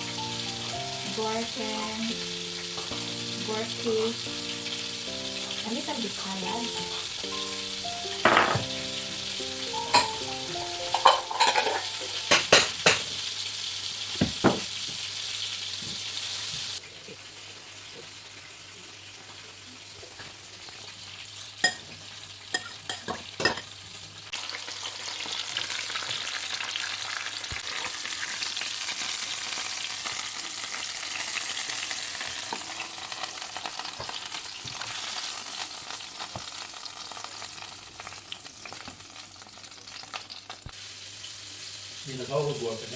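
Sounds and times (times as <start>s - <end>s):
pork chops sizzling in a frying pan: 0.0s - 42.9s
kitchen utensils clicking and knocking: 8.2s - 8.8s, 9.8s - 13.2s.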